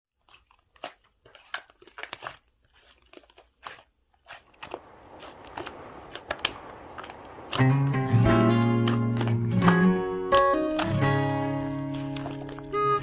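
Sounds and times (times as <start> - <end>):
handling clicks and crinkles: 0.2 - 7.8, 8.8 - 13.0
faint steady hiss: 4.5 - 13.0.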